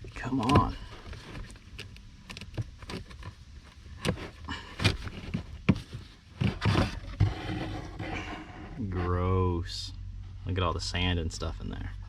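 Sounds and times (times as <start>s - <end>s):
filter scraping: 6.4s - 9.5s.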